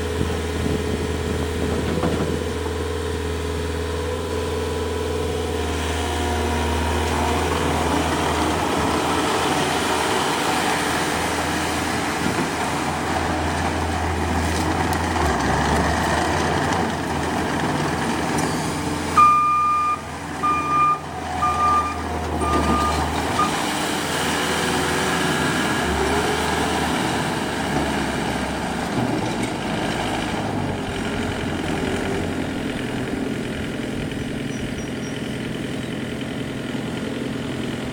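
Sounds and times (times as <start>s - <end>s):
diesel engine running: 0.0s - 37.9s
backup alarm beeping: 19.2s - 23.6s.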